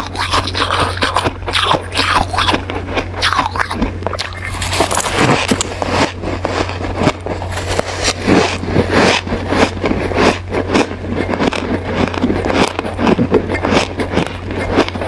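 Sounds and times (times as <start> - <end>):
crunching and chewing ice: 0.0 - 15.0
steady low hum: 0.0 - 15.0.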